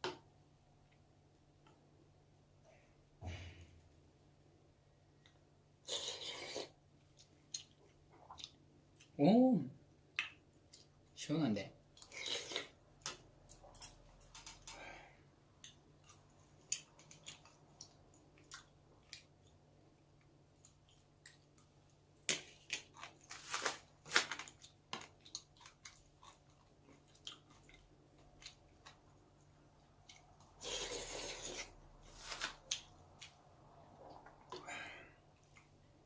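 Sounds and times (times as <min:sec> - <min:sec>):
chewing food close up: 0:24.6 - 0:31.8.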